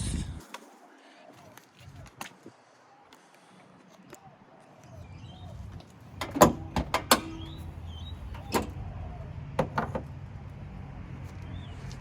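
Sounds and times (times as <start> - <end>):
car bonnet latch clunking: 6.1 - 8.8, 9.6 - 10.1.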